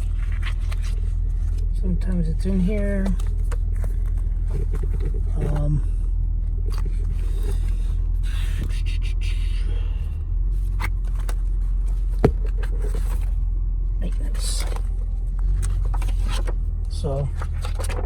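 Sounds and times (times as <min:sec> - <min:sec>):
pages rustling: 0:00.0 - 0:01.7, 0:10.6 - 0:13.3
low rumble in car cabin: 0:00.0 - 0:18.0.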